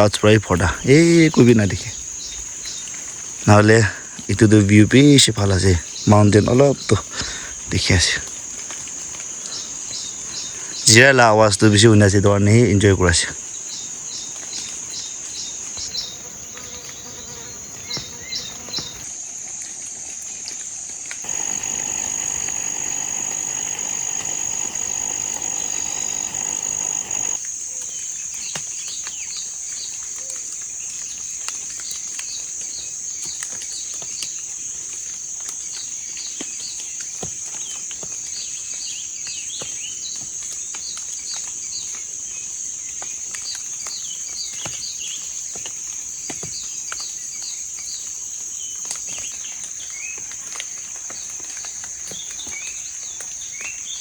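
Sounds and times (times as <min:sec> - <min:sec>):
insects trilling: 0:00.0 - 0:19.2, 0:21.2 - 0:54.0
short insect chirps: 0:15.8 - 0:19.1, 0:21.2 - 0:27.4.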